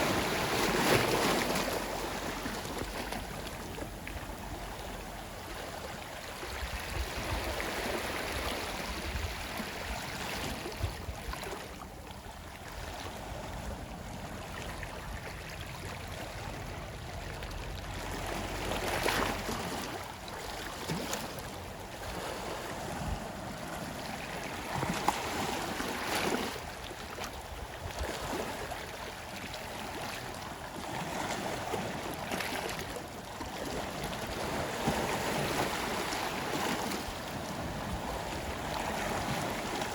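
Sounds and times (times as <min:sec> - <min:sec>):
sea waves washing onto shore: 0:00.0 - 0:12.0, 0:28.2 - 0:39.9.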